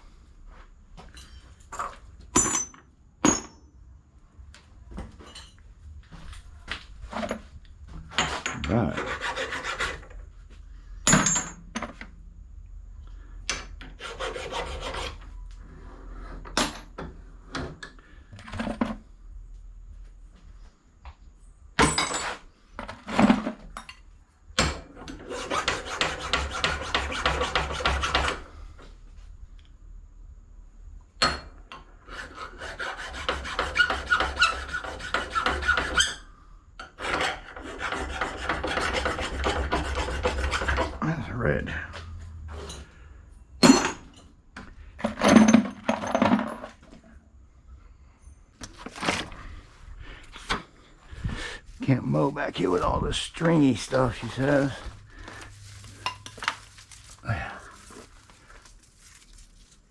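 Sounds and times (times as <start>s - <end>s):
scraping metal scrap by hand: 8.1s - 10.2s, 13.8s - 16.5s, 25.0s - 28.5s, 32.0s - 41.0s.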